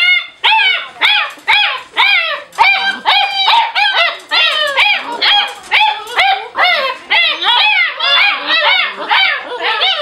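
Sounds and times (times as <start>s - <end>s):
puppies yelping: 0.0s - 10.0s.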